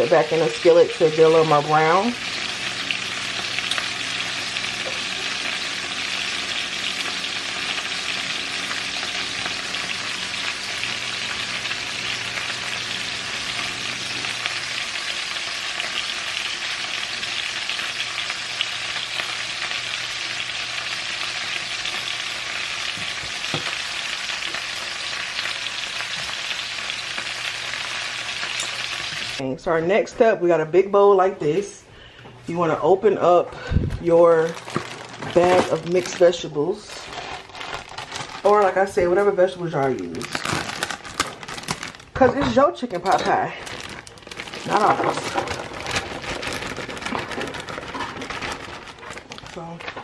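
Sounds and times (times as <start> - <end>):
chicken sizzling in a skillet: 0.0 - 29.4.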